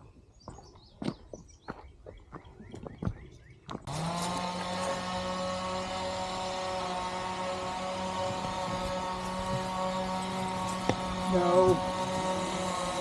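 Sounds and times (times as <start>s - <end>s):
engine drone: 3.8s - 13.0s.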